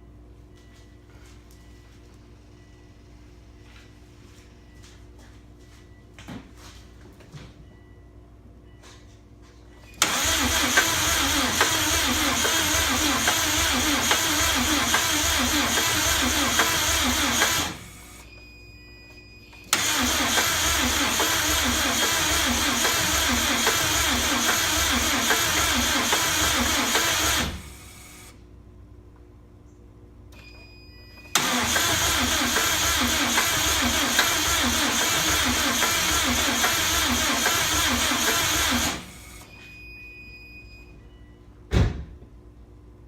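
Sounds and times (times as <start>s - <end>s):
engine cranking on starter: 10.0s - 18.2s, 19.7s - 28.3s, 31.3s - 39.5s.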